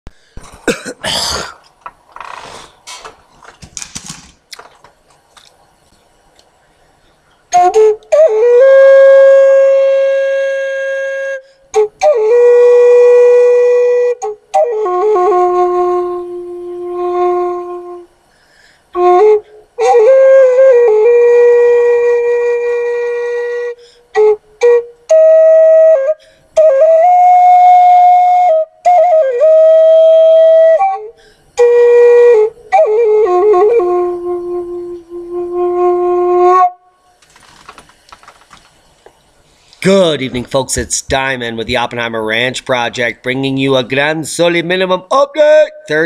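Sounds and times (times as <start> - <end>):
breathy gusts: 2.3 - 2.9
flute playing long notes: 7.5 - 18.2, 18.9 - 37.1.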